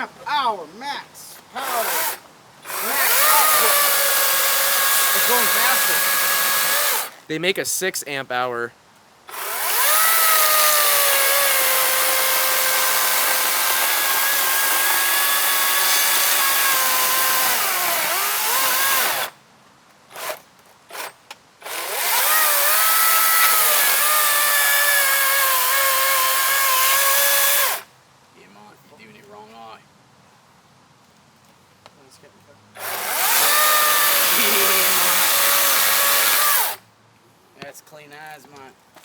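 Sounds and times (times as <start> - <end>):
electric chainsaw cutting wood: 1.6 - 7.2, 9.3 - 19.4, 20.1 - 27.9, 32.8 - 36.8.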